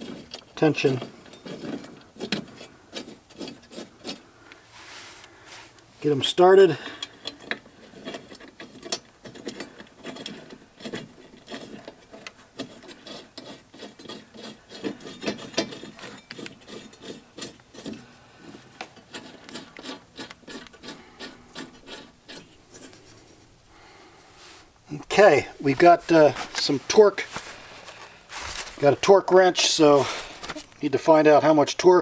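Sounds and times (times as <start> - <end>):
metal scraping and rubbing: 7.3 - 31.5.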